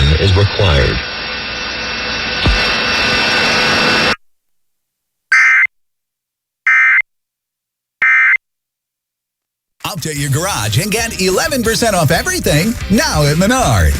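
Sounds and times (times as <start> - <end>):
warbling digital data tones: 5.3 - 5.7, 6.7 - 7.0.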